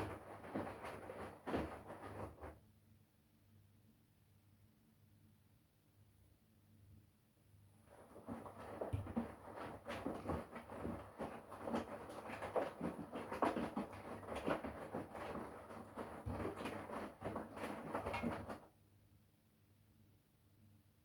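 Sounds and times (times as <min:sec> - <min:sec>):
washing machine drum sloshing: 0:00.0 - 0:02.6, 0:07.9 - 0:18.7
washing machine hum: 0:00.0 - 0:02.6, 0:07.8 - 0:18.7.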